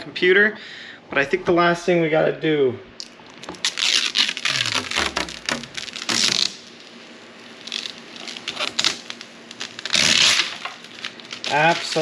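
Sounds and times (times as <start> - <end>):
plastic film crinkling: 3.0 - 12.0.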